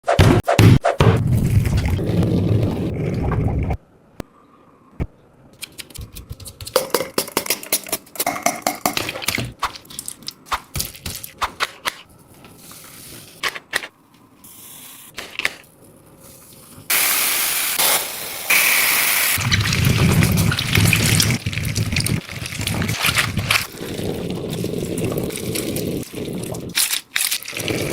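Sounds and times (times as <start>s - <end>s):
loud steady hissing: 16.9s - 19.5s.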